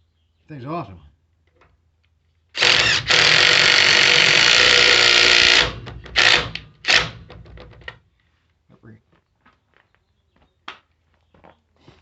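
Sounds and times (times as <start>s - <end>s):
impact wrench hammering: 2.6s - 7.9s.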